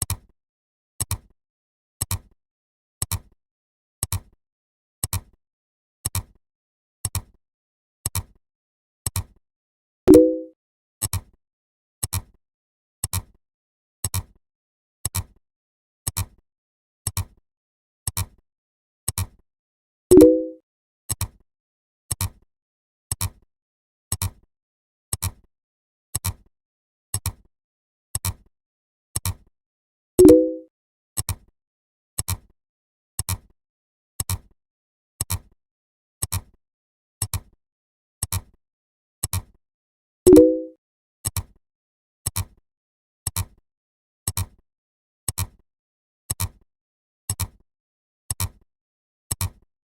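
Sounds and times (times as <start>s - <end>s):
clock ticking: 10.1s - 10.5s, 20.1s - 20.6s, 30.2s - 30.6s.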